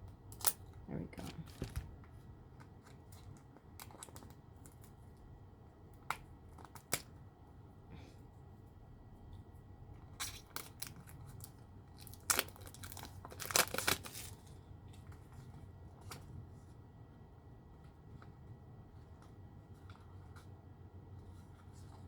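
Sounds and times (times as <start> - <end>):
packaging torn and crinkled: 10.2 - 14.5.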